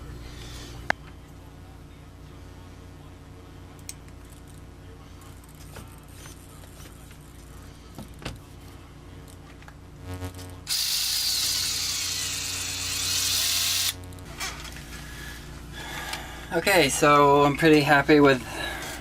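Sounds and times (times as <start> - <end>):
short buzz: 10.0 - 14.3
electric motor whirring: 10.1 - 14.3.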